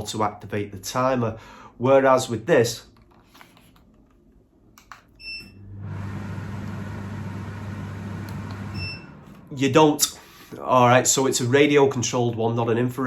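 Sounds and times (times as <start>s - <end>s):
air filter fan running: 5.7s - 11.7s.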